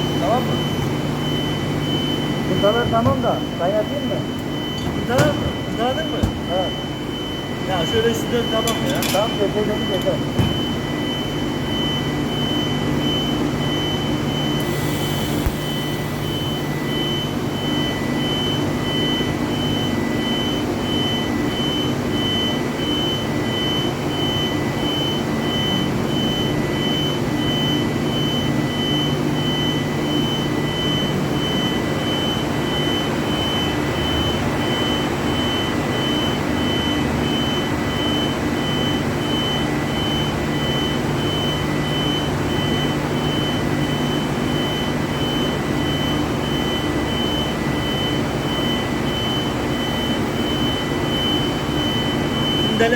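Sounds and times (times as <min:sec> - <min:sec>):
welding arc buzzing hiss: 0:14.6 - 0:16.8.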